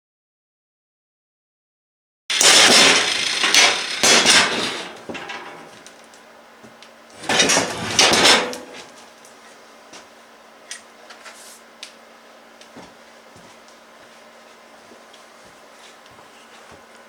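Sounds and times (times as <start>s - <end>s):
loud bursts of harsh metalwork noise: 2.3s - 15.0s.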